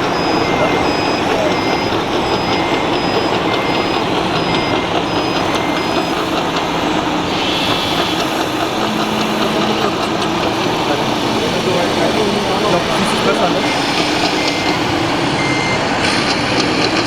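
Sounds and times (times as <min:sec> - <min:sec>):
short high reversing beeps: 0:00.0 - 0:15.9
busy hall crowd din: 0:00.0 - 0:17.0.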